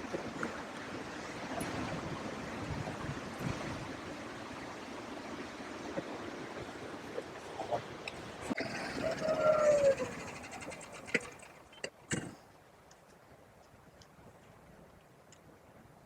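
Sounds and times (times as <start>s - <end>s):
strong wind blowing: 0.0s - 10.5s
faint clicks: 9.8s - 15.5s.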